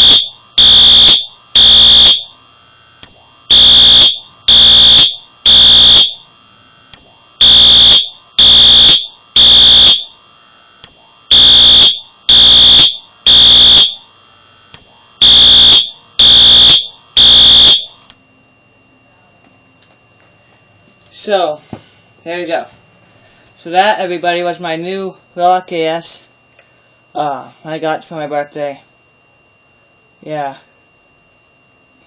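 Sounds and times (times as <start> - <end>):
fire alarm horn blasts: 0.0 - 2.4, 3.5 - 6.3, 7.4 - 10.2, 11.3 - 14.1, 15.2 - 18.0.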